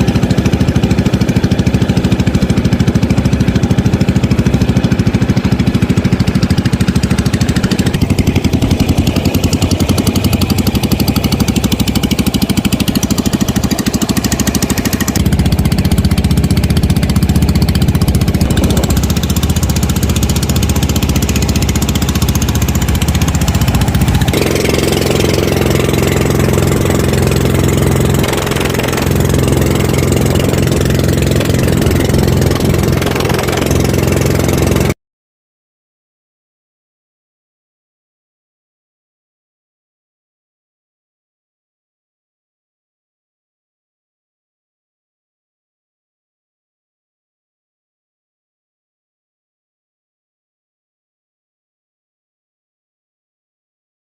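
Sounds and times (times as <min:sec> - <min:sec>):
small engine running: 0:00.0 - 0:35.0.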